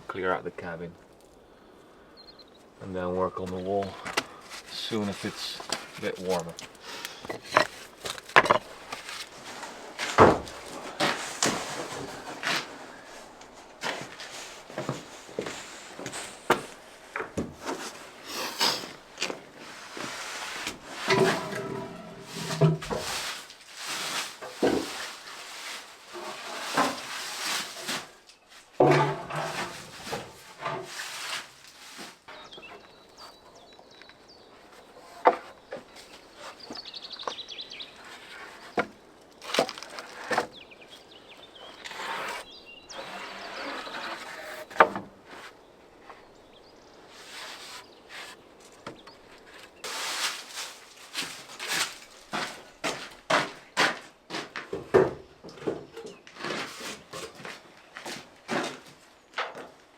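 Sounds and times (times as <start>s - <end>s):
scraping: 3.4s - 46.3s, 47.0s - 54.6s
wooden boards knocking and clattering: 3.9s - 18.0s, 20.7s - 23.4s, 24.3s - 25.1s, 28.8s - 31.0s, 35.0s - 37.4s, 38.0s - 40.5s, 41.7s - 45.4s, 51.1s - 59.8s.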